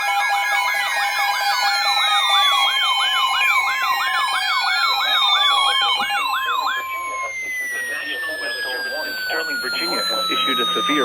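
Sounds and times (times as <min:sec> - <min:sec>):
rapidly sweeping siren: 0:00.0 - 0:11.0
sirens wailing: 0:00.0 - 0:11.0.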